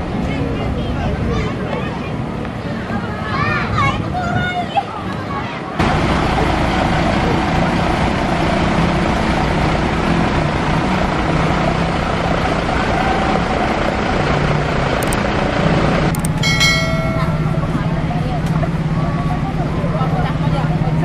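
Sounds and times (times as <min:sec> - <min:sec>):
road and wind noise: 0:00.0 - 0:21.0
vehicle engine running: 0:05.8 - 0:21.0.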